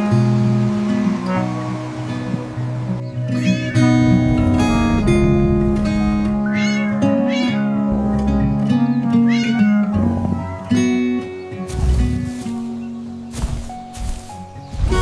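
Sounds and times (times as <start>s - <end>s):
plucked guitar music: 0.0s - 15.0s
cat meowing: 6.0s - 8.2s, 9.2s - 10.6s.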